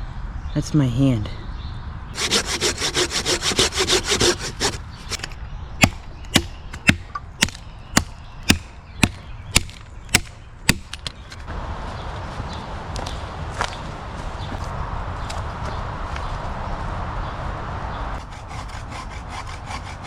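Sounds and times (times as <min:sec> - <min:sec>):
hand saw cutting wood: 0:02.2 - 0:07.6, 0:18.2 - 0:20.0
axe chopping into log: 0:02.2 - 0:11.0.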